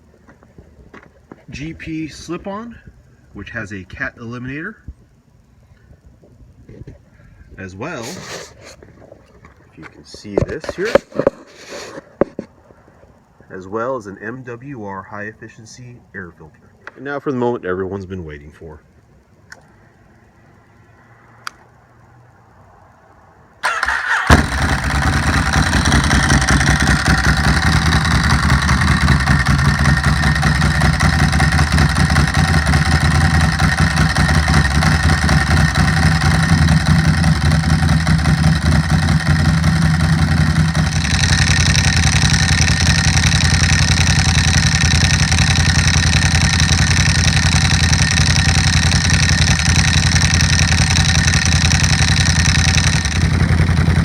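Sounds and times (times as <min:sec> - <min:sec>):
motorcycle engine idling: 0:23.6 - 0:54.0.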